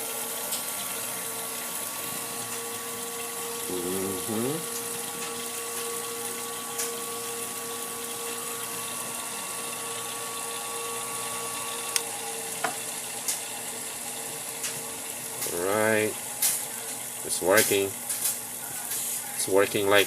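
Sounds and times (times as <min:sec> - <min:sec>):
sharpener motor humming: 0:01.3 - 0:16.2.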